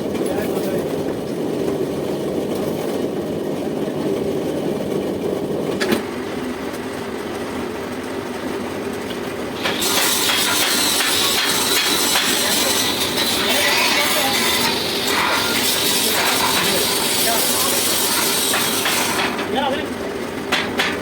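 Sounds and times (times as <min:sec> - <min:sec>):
metal lathe running: 0:09.5 - 0:21.0.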